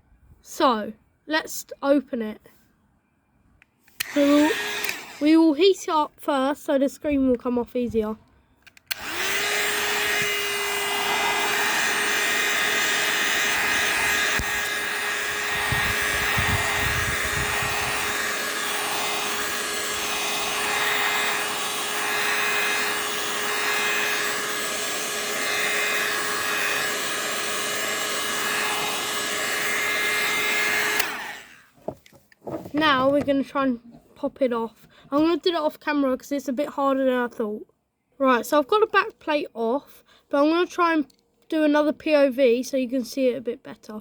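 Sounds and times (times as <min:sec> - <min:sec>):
hot-air blower whine: 0:04.0 - 0:05.3, 0:08.9 - 0:31.7.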